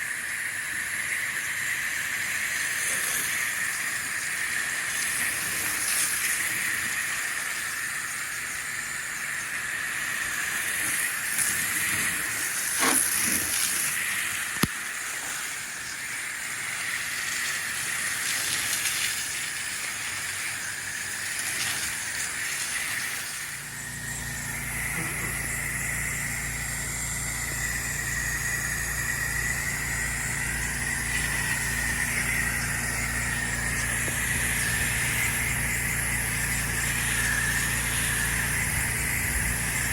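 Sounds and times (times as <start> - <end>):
pressure washer spray hissing: 0.0 - 39.9
low engine hum: 23.6 - 39.9.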